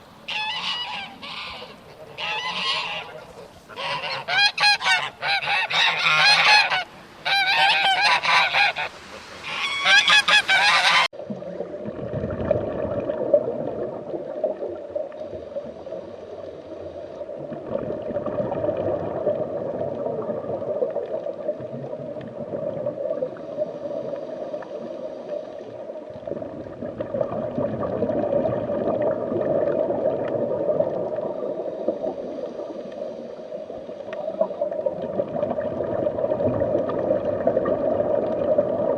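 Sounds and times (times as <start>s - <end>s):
geese honking: 0.3s - 11.1s
rough murmuring noise: 1.0s - 4.4s.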